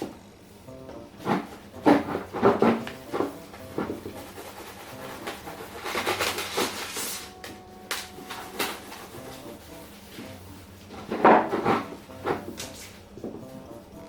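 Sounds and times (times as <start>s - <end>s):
sharp knocks and clatters: 11.0s - 13.5s.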